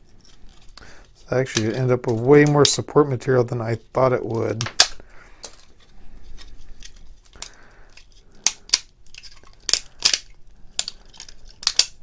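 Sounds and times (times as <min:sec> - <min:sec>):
plastic snapping and cracking: 0:04.5 - 0:05.7, 0:06.4 - 0:12.0.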